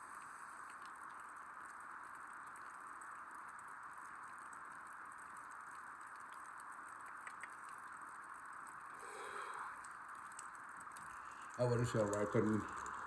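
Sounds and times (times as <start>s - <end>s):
light rain hiss: 0.0s - 13.0s
raindrops ticking: 0.1s - 13.0s.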